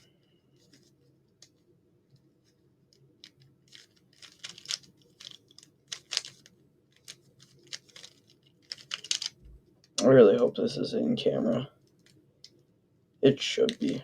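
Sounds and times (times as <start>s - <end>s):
plastic puzzle cube clicking: 3.2s - 9.4s.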